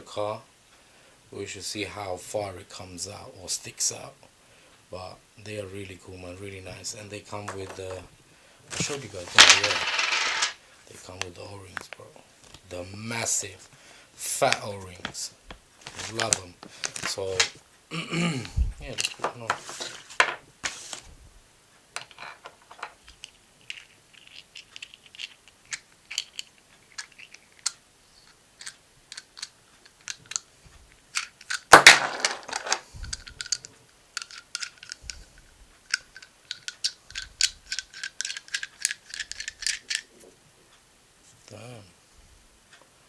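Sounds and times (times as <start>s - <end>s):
metal parts clattering: 8.7s - 10.6s, 22.0s - 27.8s, 31.1s - 35.1s, 35.9s - 40.0s
small metal parts clicking: 22.0s - 35.2s, 35.8s - 40.1s.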